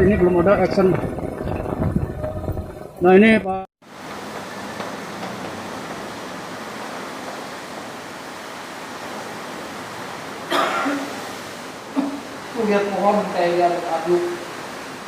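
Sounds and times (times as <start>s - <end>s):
wind: 0.0s - 15.0s
heavy rain: 3.8s - 15.0s
cough-like vocal sound: 10.5s - 11.1s.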